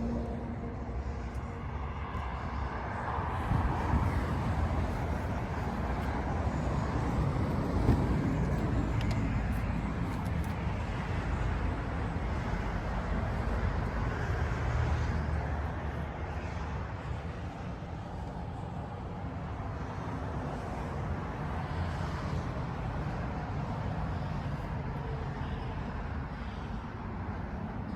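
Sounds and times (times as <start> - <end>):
vehicle running: 0.0 - 18.6
road traffic noise: 0.0 - 27.9.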